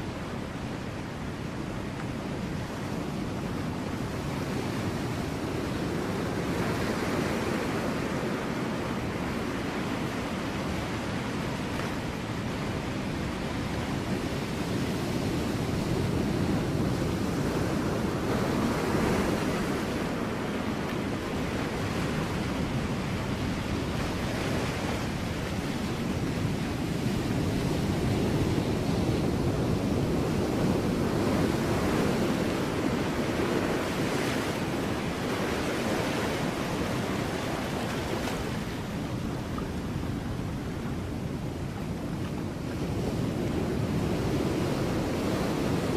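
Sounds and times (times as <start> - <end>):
ocean waves breaking on rocks: 0.0 - 45.9.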